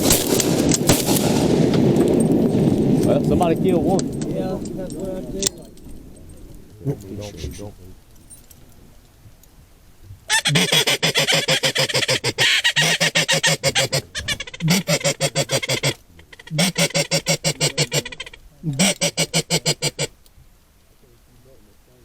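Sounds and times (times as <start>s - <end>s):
duck call chattering pulses: 10.3s - 20.2s.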